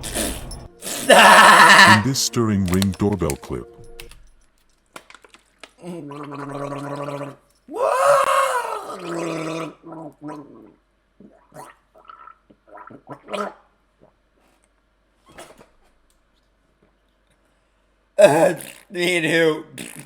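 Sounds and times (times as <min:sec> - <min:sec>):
person making wordless vocal noise: 0:01.0 - 0:03.7, 0:18.2 - 0:18.8.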